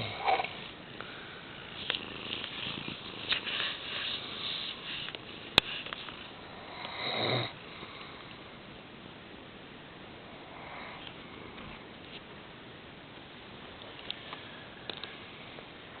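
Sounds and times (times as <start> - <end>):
man snoring: 0.0 - 0.6, 6.6 - 7.6.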